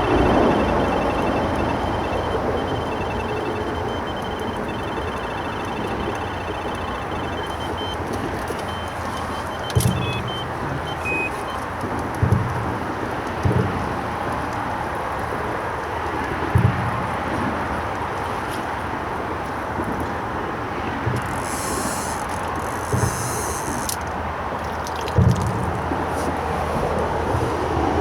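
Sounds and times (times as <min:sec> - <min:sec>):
road traffic rushing: 0:00.0 - 0:13.3.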